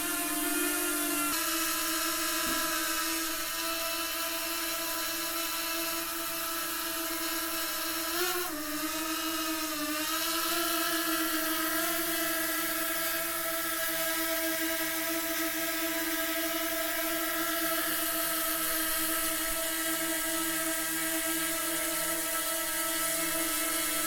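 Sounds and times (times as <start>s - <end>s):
drone propellers buzzing whine: 0.0s - 5.4s, 8.5s - 24.0s.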